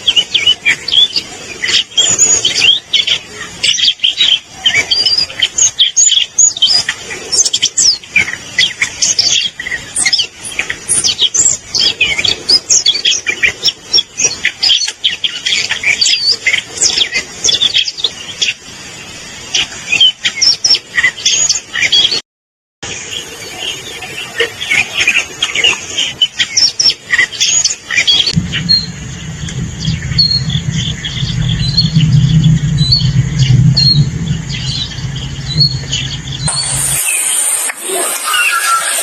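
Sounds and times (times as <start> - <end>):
bird singing fast warble: 23.1 - 39.0.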